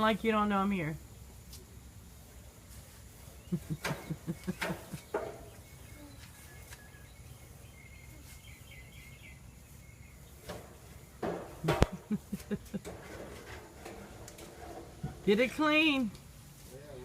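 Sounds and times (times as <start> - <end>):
birds chirping: 3.0 - 13.0
person stifled giggling: 3.5 - 5.1, 11.7 - 12.9.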